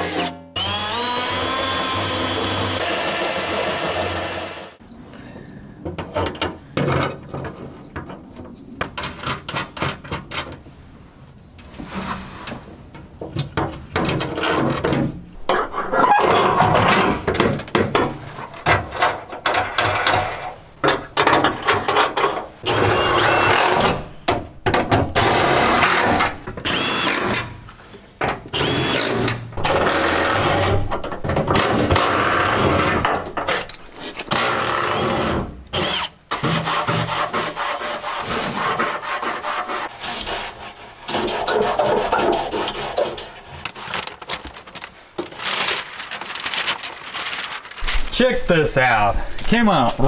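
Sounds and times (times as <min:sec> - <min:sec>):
power drill boring sheet metal: 0:00.0 - 0:04.8, 0:22.6 - 0:24.1, 0:25.2 - 0:27.5, 0:28.5 - 0:30.8.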